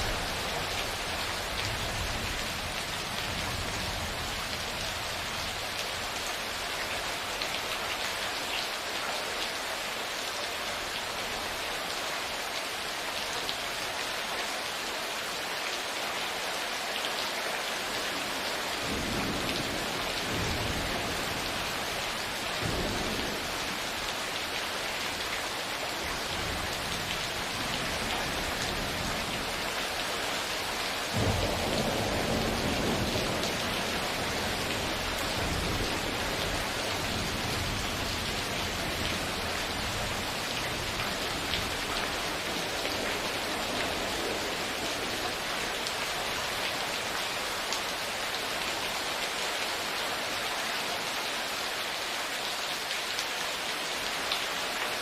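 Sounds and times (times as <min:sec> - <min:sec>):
steady rain: 0:00.0 - 0:55.0
loud thunderclap: 0:31.2 - 0:33.4
thunder rumbling: 0:31.2 - 0:38.2.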